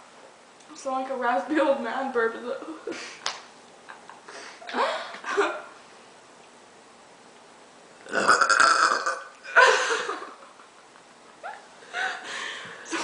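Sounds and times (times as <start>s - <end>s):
person burping loudly: 8.0s - 9.6s.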